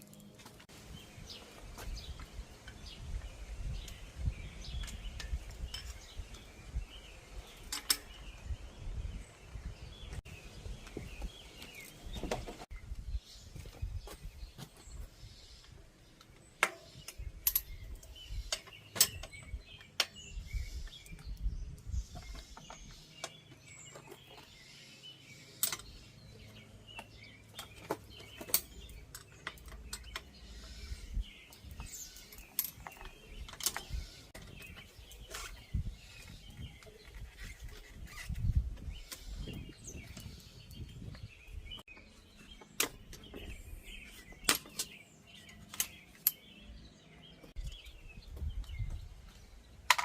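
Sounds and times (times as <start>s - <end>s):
birds chirping: 0.0s - 50.0s
hand tools clicking and clinking: 7.5s - 8.1s, 27.0s - 30.7s, 31.5s - 34.0s.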